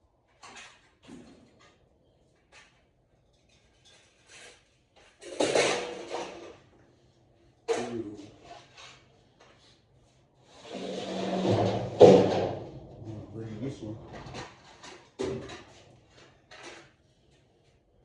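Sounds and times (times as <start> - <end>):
scraping and knocking: 10.5 - 17.1.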